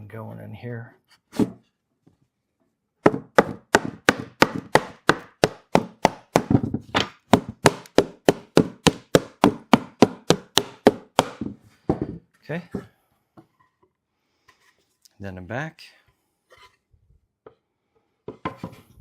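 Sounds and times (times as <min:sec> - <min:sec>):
wooden boards knocking: 0:03.0 - 0:12.2.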